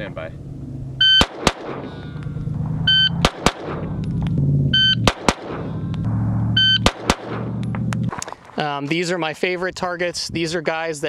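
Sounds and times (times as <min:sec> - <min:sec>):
shot timer beep: 0:01.0 - 0:01.3, 0:02.9 - 0:03.2, 0:04.7 - 0:05.1, 0:06.6 - 0:06.9
pistol shots: 0:01.1 - 0:02.1, 0:03.2 - 0:04.0, 0:05.0 - 0:05.9, 0:06.8 - 0:07.8.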